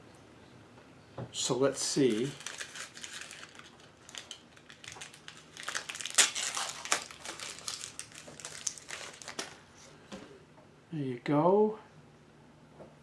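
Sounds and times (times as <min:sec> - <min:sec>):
soap wrapping crinkling: 0:01.8 - 0:09.6.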